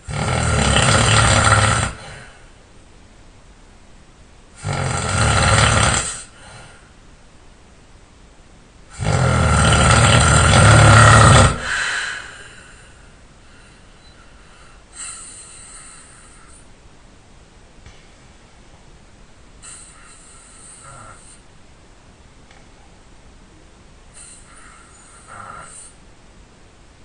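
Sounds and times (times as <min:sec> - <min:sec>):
person snoring loudly: 0:00.0 - 0:02.4, 0:04.6 - 0:06.6, 0:08.9 - 0:12.6, 0:19.6 - 0:21.4, 0:24.2 - 0:26.0.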